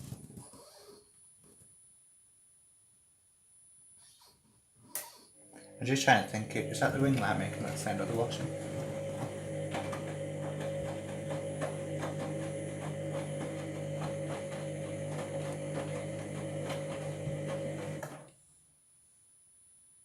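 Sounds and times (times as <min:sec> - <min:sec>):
washing machine motor humming: 0:05.4 - 0:18.3.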